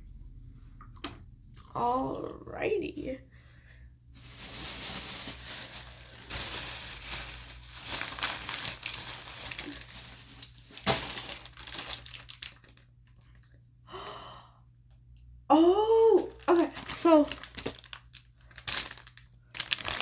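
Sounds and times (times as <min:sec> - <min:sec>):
plastic packaging crinkling: 0:04.2 - 0:13.6, 0:16.3 - 0:20.0.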